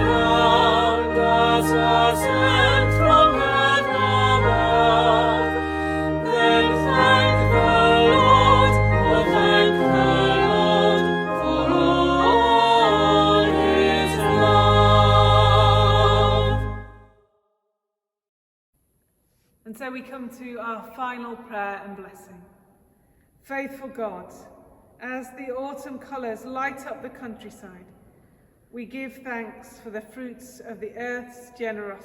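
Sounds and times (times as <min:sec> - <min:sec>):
sustained low bass notes: 0:00.0 - 0:17.0
choir singing with vibrato: 0:00.0 - 0:17.1.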